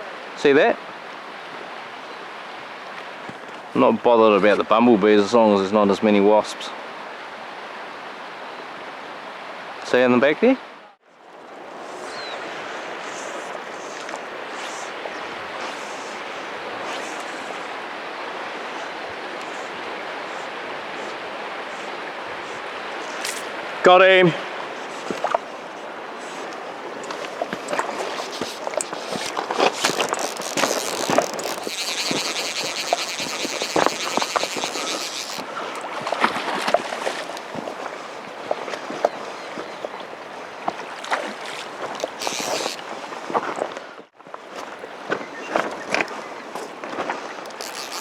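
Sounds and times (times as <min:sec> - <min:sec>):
river running over stones: 0:11.2 - 0:43.8
water splashing: 0:11.4 - 0:43.8, 0:45.1 - 0:48.0
fishing reel drag buzzing: 0:11.9 - 0:17.7, 0:27.1 - 0:35.9, 0:42.0 - 0:42.9, 0:47.4 - 0:48.0.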